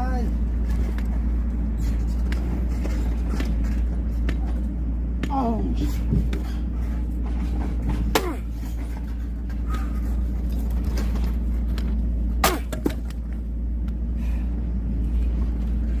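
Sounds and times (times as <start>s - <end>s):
low rumble: 0.0s - 16.0s
axe striking a log: 7.9s - 8.5s, 12.4s - 13.1s.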